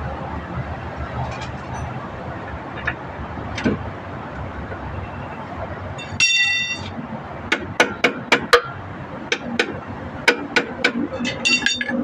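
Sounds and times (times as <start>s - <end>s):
high ringing tone: 6.0s - 6.9s
hammer tapping on metal: 7.5s - 12.0s.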